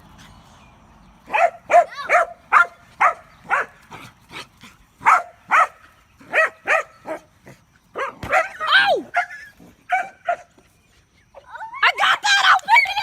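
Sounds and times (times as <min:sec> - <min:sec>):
dog barking: 0:01.3 - 0:03.8, 0:05.0 - 0:07.3, 0:08.0 - 0:09.3, 0:09.9 - 0:10.5.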